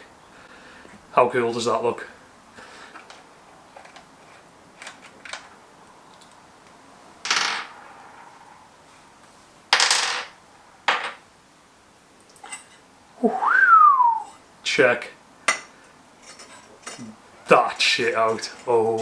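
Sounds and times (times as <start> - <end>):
metal tools clinking: 12.3 - 12.8, 15.5 - 19.0.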